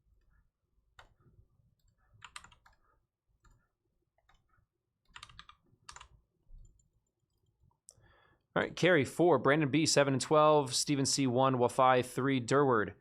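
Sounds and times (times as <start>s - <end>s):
faint keyboard typing: 0.2s - 8.0s.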